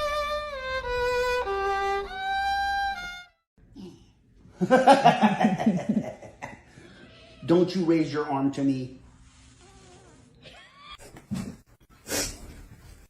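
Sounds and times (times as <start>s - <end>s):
slow violin melody: 0.0s - 3.4s.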